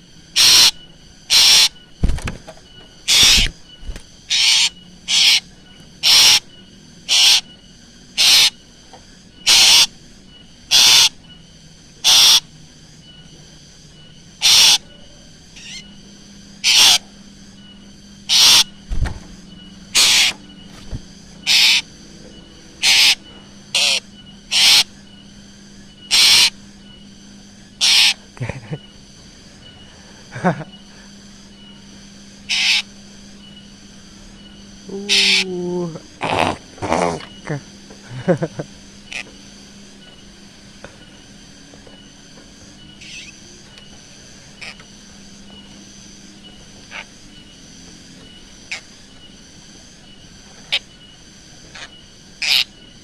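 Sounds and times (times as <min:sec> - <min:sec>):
bird harsh calls: 0:00.0 - 0:08.7, 0:09.4 - 0:11.4, 0:12.0 - 0:12.6, 0:14.0 - 0:16.0, 0:16.6 - 0:25.2, 0:25.9 - 0:26.7, 0:27.7 - 0:29.0, 0:32.4 - 0:33.5, 0:34.3 - 0:37.6, 0:39.0 - 0:39.5, 0:42.8 - 0:43.8, 0:44.5 - 0:45.0, 0:46.8 - 0:47.5, 0:48.2 - 0:49.2, 0:50.6 - 0:53.0.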